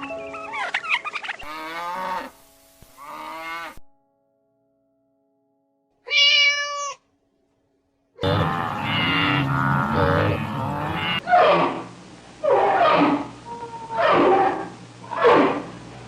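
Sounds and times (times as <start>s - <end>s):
animal bleating cries: 6.1s - 7.0s, 8.2s - 11.7s.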